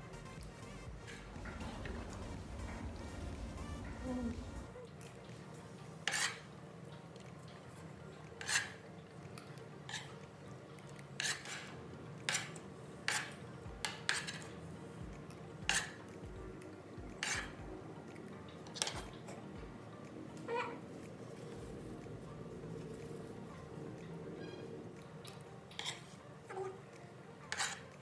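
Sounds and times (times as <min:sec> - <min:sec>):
low background hum: 0:00.0 - 0:28.0
cutlery clinking on a dish: 0:06.0 - 0:06.5, 0:07.2 - 0:14.6, 0:15.6 - 0:16.2, 0:17.2 - 0:17.6, 0:18.6 - 0:19.5, 0:25.3 - 0:26.7, 0:27.5 - 0:28.0.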